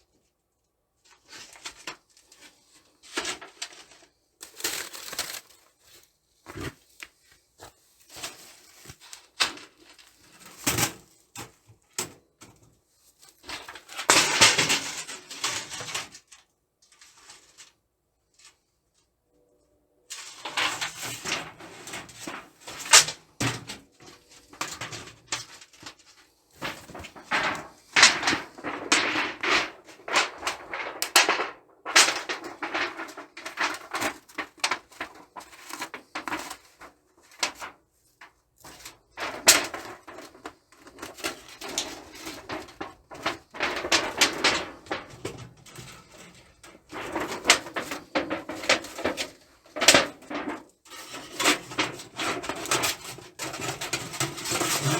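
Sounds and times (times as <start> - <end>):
hard objects clattering and scraping: 20.1 - 54.9.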